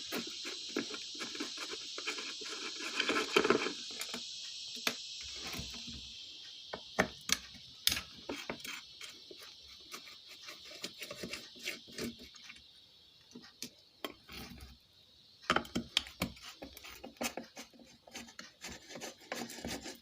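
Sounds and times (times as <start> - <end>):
crickets chirring: 0.0 - 20.0.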